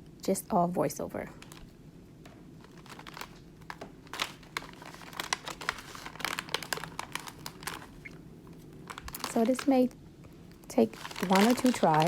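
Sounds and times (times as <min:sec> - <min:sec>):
chip bag crinkling: 0:01.3 - 0:01.8, 0:02.5 - 0:09.9, 0:10.6 - 0:12.0.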